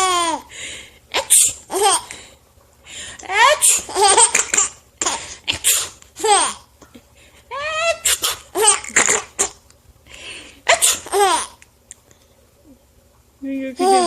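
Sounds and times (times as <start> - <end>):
baby laughing: 0.0 - 0.5, 1.1 - 2.2, 3.2 - 5.6, 6.2 - 6.7, 7.5 - 9.6, 10.7 - 11.6, 13.8 - 14.0.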